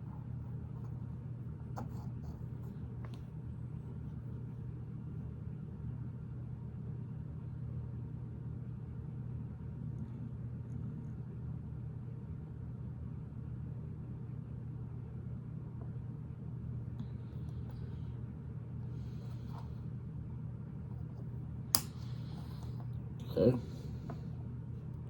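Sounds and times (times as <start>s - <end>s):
low background hum: 0.0s - 25.0s.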